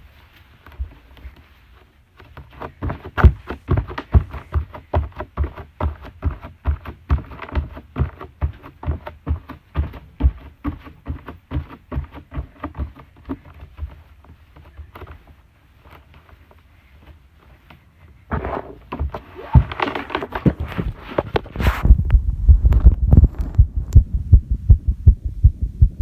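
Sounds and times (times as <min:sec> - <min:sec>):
heartbeat thumps: 0:20.5 - 0:26.0.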